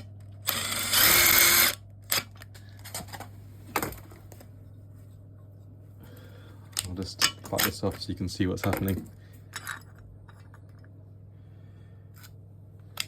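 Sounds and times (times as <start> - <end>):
impact driver running: 0.4 - 1.8.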